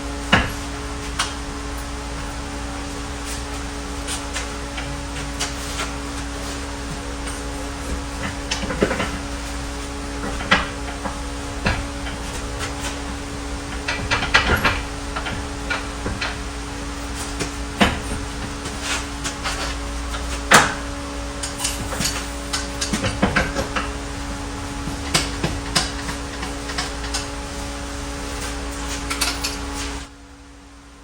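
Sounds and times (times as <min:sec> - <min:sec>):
steady hum: 0:00.0 - 0:31.0
metallic clanks of tools: 0:07.2 - 0:24.0, 0:24.8 - 0:27.6.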